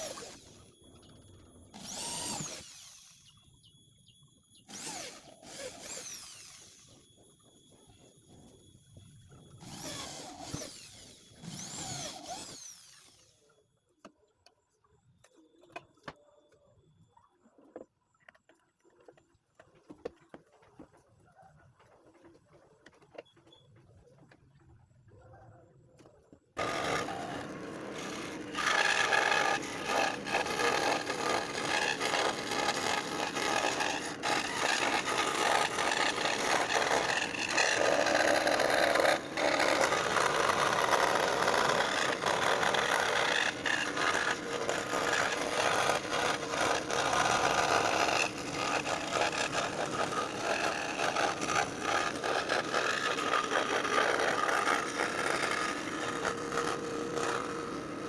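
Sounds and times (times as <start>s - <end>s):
scroll saw cutting wood: 0.0s - 3.6s, 4.6s - 7.6s, 9.2s - 13.6s, 26.6s - 58.0s.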